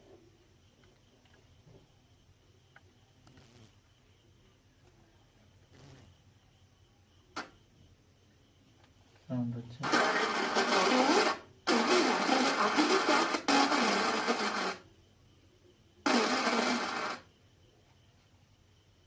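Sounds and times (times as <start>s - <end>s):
harsh audio through amplifier speaker: 9.8s - 14.8s, 16.1s - 17.2s.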